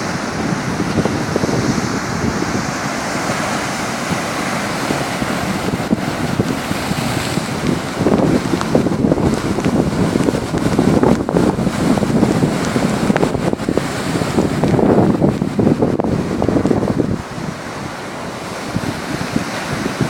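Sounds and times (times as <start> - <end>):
rough sea surf: 0.0 - 20.0
wind buffeting microphone: 0.0 - 20.0.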